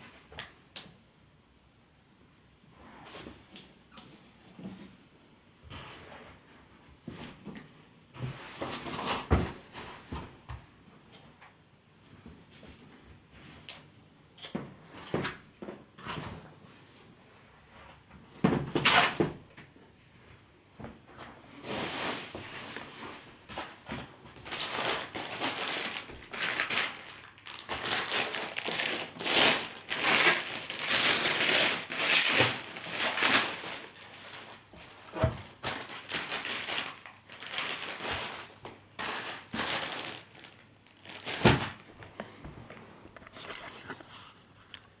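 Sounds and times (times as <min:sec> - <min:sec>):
plastic wrap and foam crinkling: 0:21.6 - 0:42.2.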